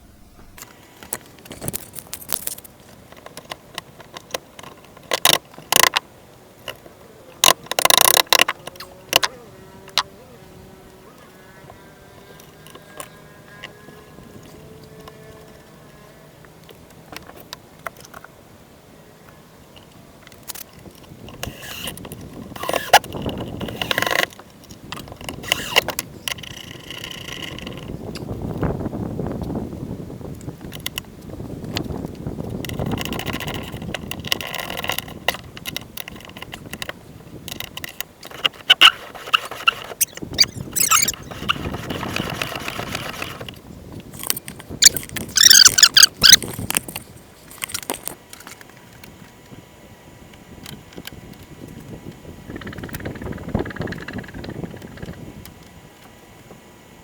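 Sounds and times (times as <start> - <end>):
tools clicking and scraping metal: 1.4 - 2.7, 37.5 - 41.2, 42.0 - 48.7
metal clinks and scrapes of tools: 1.5 - 2.7, 44.1 - 48.6.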